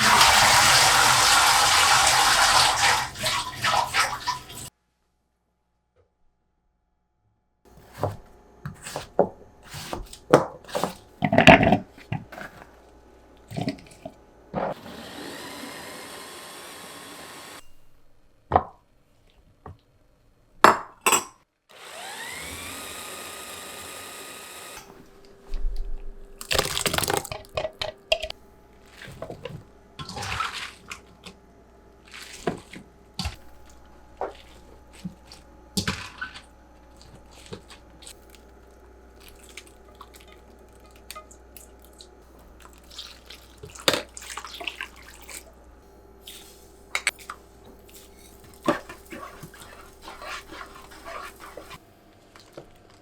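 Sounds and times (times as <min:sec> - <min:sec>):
water running into a container: 0:00.0 - 0:04.7, 0:26.4 - 0:27.9, 0:32.0 - 0:45.6, 0:47.2 - 0:51.8.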